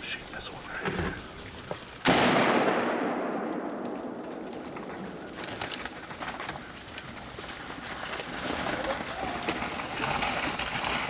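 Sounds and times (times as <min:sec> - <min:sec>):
rifle shot echoing: 0:02.0 - 0:05.4.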